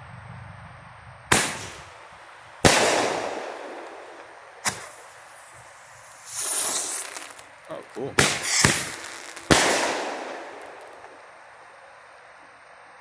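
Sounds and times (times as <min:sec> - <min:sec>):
firework tube bangs: 0:01.3 - 0:11.3
firework hiss: 0:01.3 - 0:11.5.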